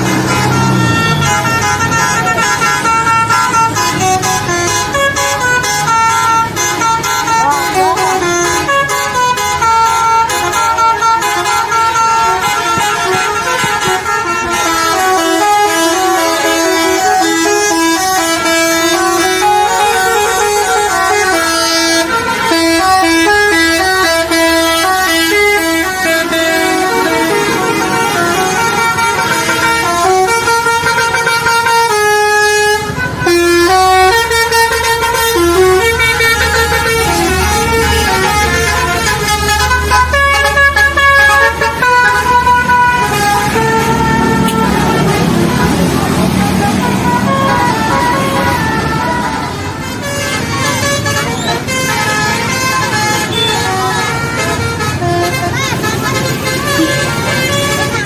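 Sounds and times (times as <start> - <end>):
low engine rumble: 0.0 - 58.0
musical vehicle horn tune: 0.0 - 58.0.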